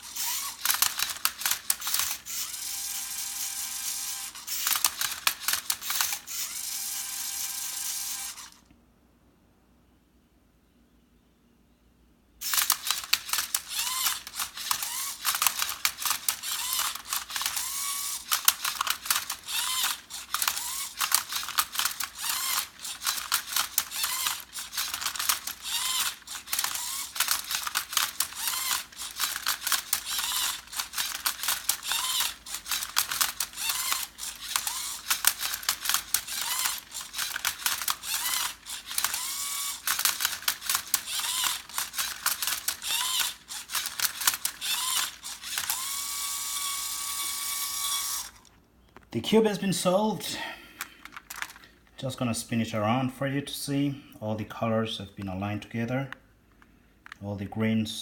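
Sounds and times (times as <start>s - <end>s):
plastic gears clicking: 0.0s - 8.6s, 12.4s - 48.5s, 50.8s - 51.9s
small electric motors whirring: 0.0s - 8.7s, 12.4s - 48.5s, 50.8s - 51.7s.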